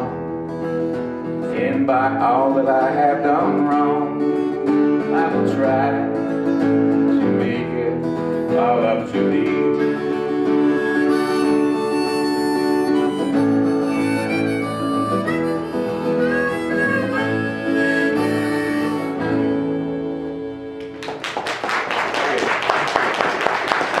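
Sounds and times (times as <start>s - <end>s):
strummed acoustic guitar: 0.0s - 20.6s
harmonica playing: 2.8s - 7.4s, 8.0s - 21.0s
applause: 20.8s - 24.0s.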